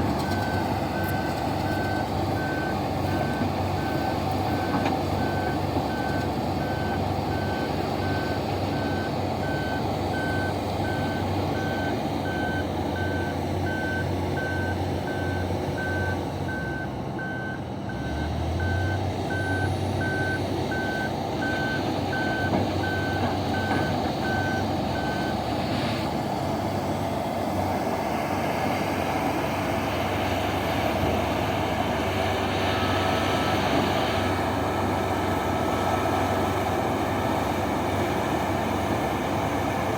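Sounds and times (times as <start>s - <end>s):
large diesel engines running: 0.0s - 39.9s
reversing alarm beeping: 0.2s - 25.4s.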